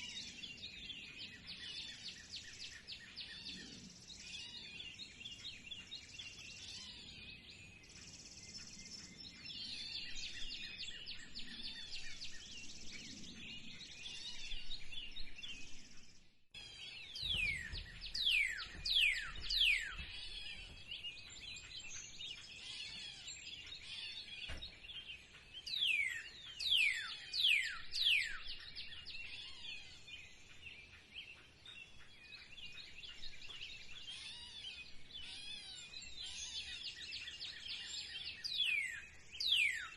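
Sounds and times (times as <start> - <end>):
small birds chirping: 0.0 - 39.9
bird whistling falling notes: 17.2 - 20.7.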